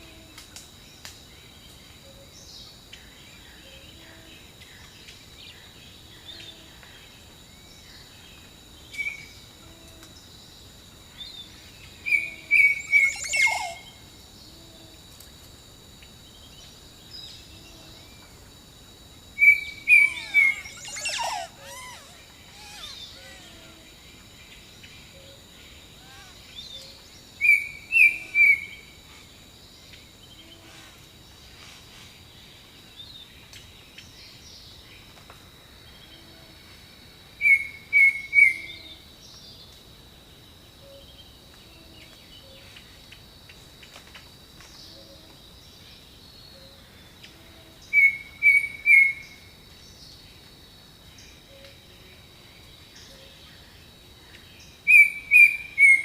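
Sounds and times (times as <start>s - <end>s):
high insect drone: 0.0s - 56.0s
soft low bird calls: 19.4s - 24.0s.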